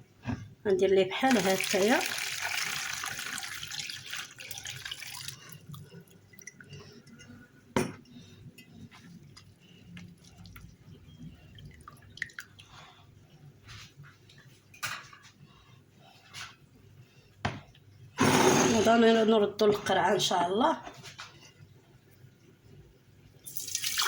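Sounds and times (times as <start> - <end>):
liquid pouring through a strainer: 1.2 - 6.5, 23.5 - 24.0
liquid dripping: 1.2 - 7.2, 9.3 - 12.9.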